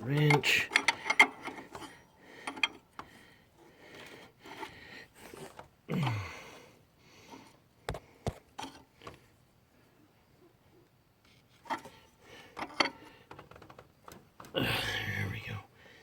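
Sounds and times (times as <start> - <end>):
heavy breathing: 0.9 - 8.3
person grunting: 5.9 - 6.4, 14.6 - 15.4.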